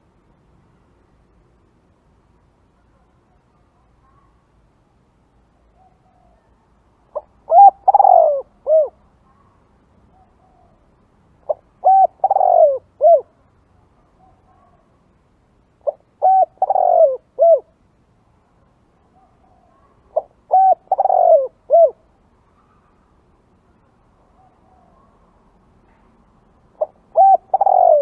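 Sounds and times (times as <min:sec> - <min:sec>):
dove cooing: 0:07.1 - 0:09.0, 0:11.4 - 0:13.4, 0:15.8 - 0:17.8, 0:19.2 - 0:22.9, 0:26.8 - 0:28.0.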